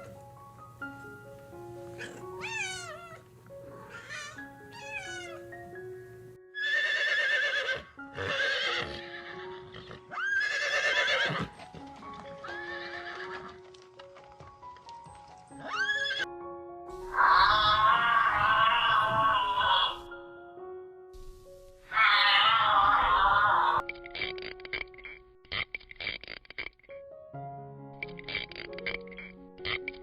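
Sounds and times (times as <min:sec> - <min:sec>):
light background music: 0:00.0 - 0:30.0
animal calls: 0:02.0 - 0:05.5, 0:17.1 - 0:20.1, 0:21.8 - 0:26.7.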